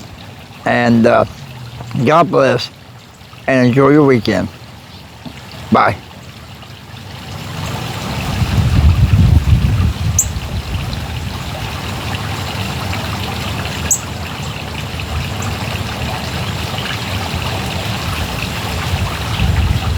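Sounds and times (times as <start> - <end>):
water fountain trickling: 0.0 - 19.9
low rumble on microphone: 8.2 - 11.8, 18.0 - 19.9.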